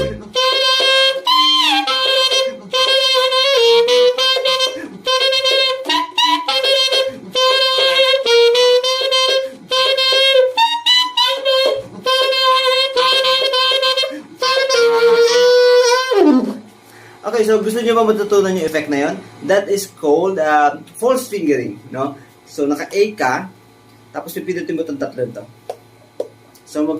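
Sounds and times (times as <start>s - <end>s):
saxophone held notes: 0.0s - 16.7s.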